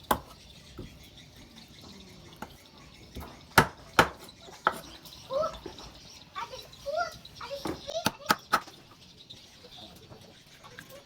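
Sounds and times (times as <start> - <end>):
knife chopping on cutting board: 0.0 - 0.9, 3.6 - 4.8.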